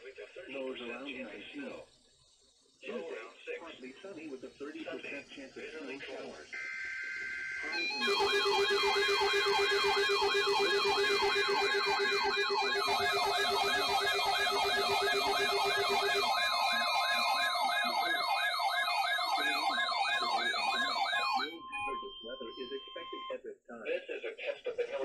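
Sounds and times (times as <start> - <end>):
steady alarm tones: 6.5 - 23.3
warbling siren: 6.6 - 23.1.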